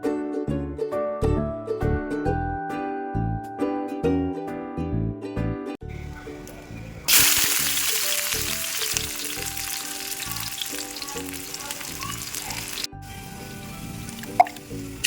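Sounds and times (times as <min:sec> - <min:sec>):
food sizzling in hot oil: 0:07.1 - 0:15.0.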